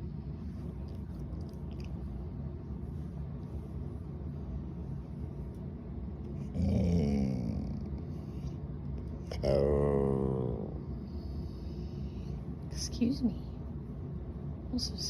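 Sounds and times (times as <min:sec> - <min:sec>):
low rumbling noise: 0:00.0 - 0:15.0
dog vocalizing: 0:06.4 - 0:08.5.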